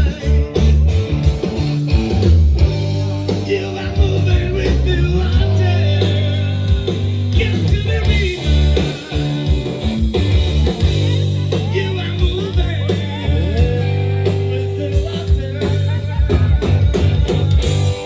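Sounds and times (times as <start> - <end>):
live rock band playing: 0.0 - 18.0
person singing: 2.6 - 9.8, 10.6 - 18.0.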